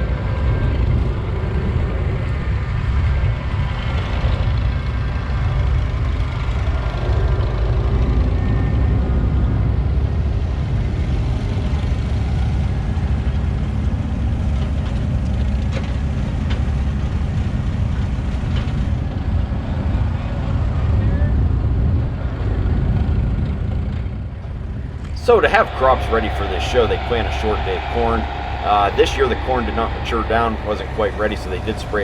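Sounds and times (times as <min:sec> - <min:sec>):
farm machinery engines rumbling: 0:24.8 - 0:32.0.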